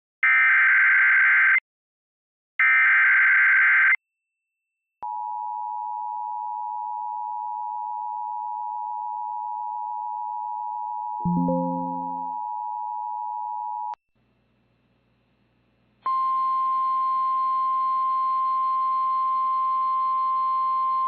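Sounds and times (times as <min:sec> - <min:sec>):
two-tone alert signal: 0:11.3 - 0:12.3.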